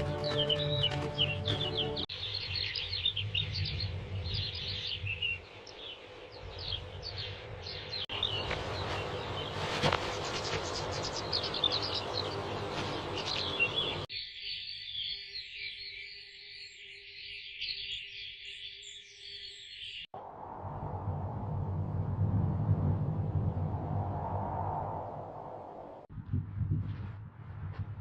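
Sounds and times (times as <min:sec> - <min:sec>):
small birds chirping: 0:00.0 - 0:20.1
low background rumble: 0:20.2 - 0:28.0.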